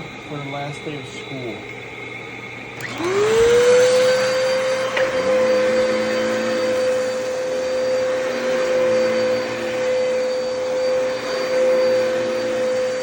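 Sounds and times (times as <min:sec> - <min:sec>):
vacuum cleaner low hum: 0:00.0 - 0:13.0
vacuum cleaner whine: 0:00.0 - 0:13.0
vacuum cleaner click: 0:02.8 - 0:05.9.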